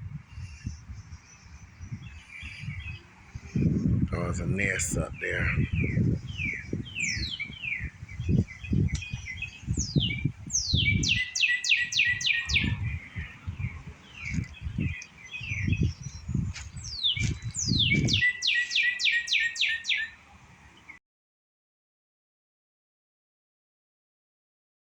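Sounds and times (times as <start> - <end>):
songbird singing: 0.0 - 21.0
bird chirps: 0.3 - 4.0, 4.6 - 20.2
low rumbles and thumps: 12.9 - 18.2.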